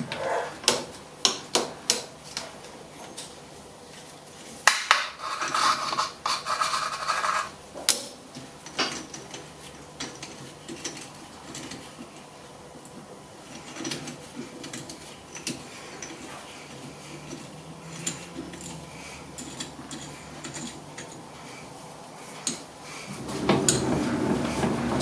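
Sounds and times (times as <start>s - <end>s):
metal tools clinking: 17.3s - 21.3s.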